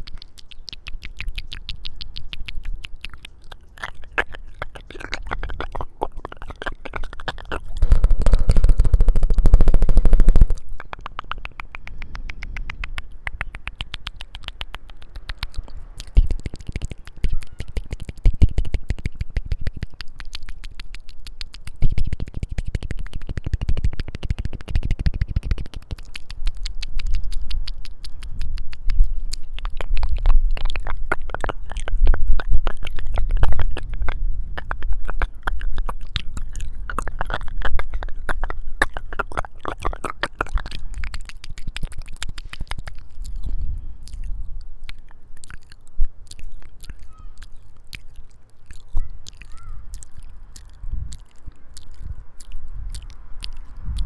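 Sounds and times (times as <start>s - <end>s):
wet mouth clicks and smacks: 0.0s - 54.0s
low rumble: 7.0s - 13.7s.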